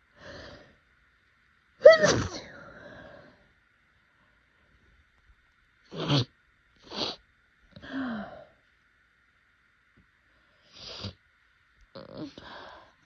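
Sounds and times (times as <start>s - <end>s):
person sneezing: 1.8s - 2.5s.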